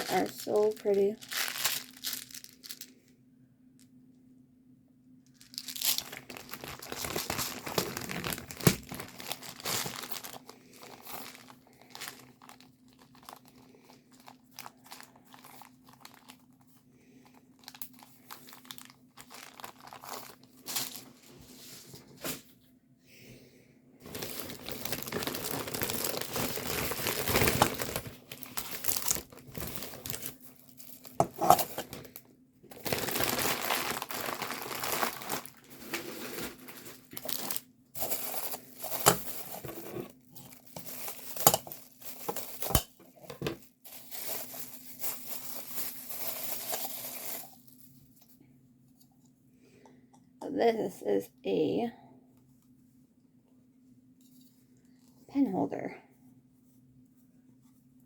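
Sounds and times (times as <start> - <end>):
plastic packaging crinkling: 0.0 - 3.0, 5.3 - 22.4, 24.0 - 48.2.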